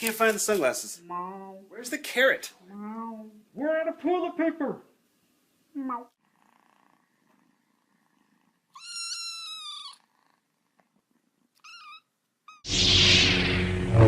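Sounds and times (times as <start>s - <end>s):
faint low cat purr: 5.9s - 8.7s
cat meowing: 8.8s - 10.1s, 11.6s - 12.7s
loud burst of noise: 12.7s - 14.0s.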